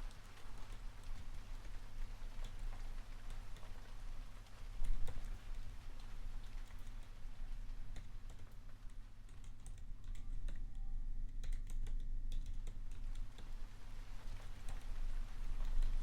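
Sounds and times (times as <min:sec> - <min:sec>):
keyboard typing: 0:09.2 - 0:13.5.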